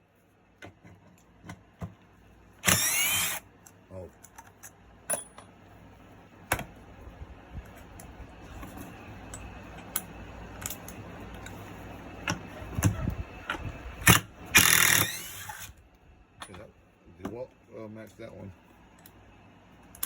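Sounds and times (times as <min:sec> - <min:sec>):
power tools and bolts clicking: 0:02.6 - 0:03.4, 0:13.5 - 0:15.7.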